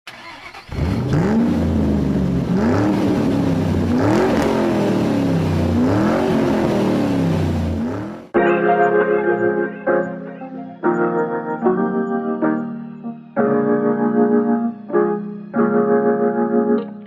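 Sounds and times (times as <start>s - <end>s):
car motor spinning up and down: 0.1s - 8.3s.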